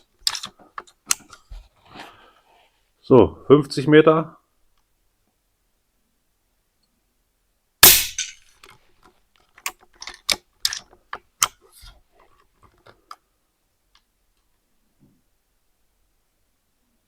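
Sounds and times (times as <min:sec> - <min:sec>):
air rifle shot: 0:07.8 - 0:08.4.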